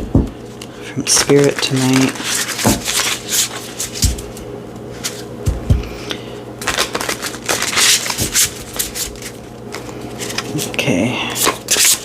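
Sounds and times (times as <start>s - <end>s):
cards rustling while shuffled: 1.0s - 5.3s, 6.6s - 12.0s
cards thumping on table: 1.2s - 3.1s, 3.8s - 4.4s.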